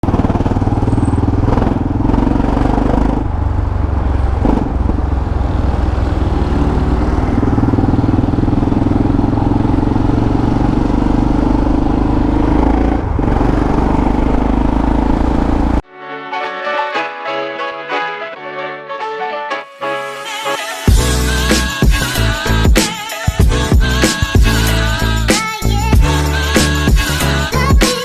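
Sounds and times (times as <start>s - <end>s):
motorcycle engine running loud: 0.0s - 15.8s.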